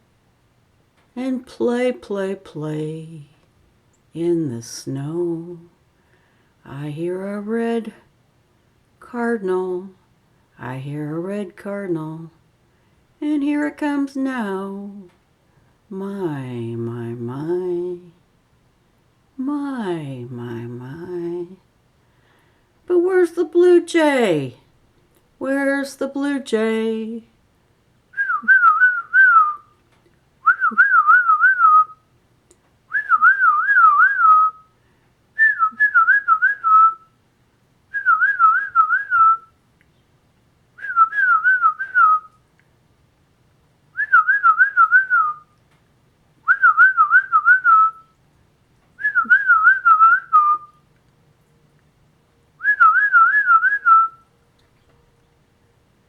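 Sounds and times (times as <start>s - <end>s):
person whistling bird-like call: 28.2s - 29.7s, 40.8s - 42.3s, 44.0s - 45.5s, 49.0s - 50.8s, 52.6s - 54.2s.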